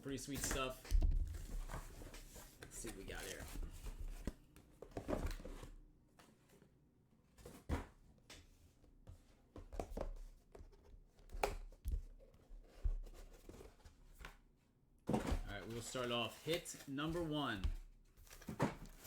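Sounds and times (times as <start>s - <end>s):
card packaging rustling: 1.3s - 4.4s, 15.6s - 17.6s.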